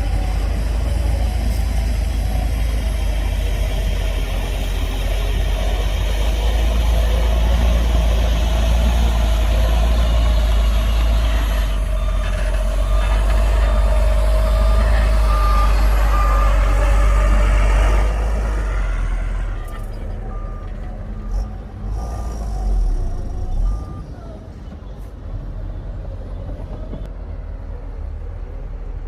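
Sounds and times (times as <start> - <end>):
diesel earthmoving machinery rumbling: 0.0 - 29.0
reversing alarm beeping: 8.6 - 24.2.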